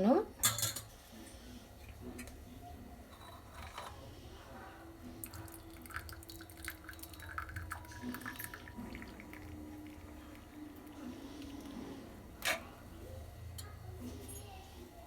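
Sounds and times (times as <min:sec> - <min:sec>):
tea pouring and dripping: 0:05.1 - 0:11.9.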